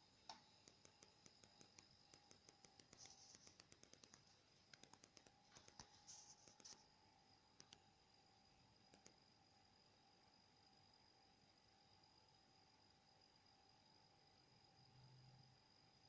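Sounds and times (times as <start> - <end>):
faint irregular clicks: 0.0 - 6.9, 7.5 - 8.0, 8.7 - 9.4
faint steady whine: 0.0 - 16.0
brief scratching sounds: 2.7 - 6.8.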